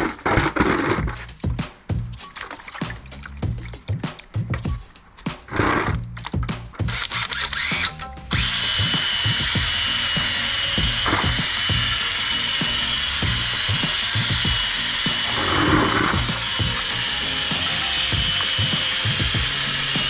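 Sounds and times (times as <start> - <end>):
electric drill sanding: 7.0 - 20.0.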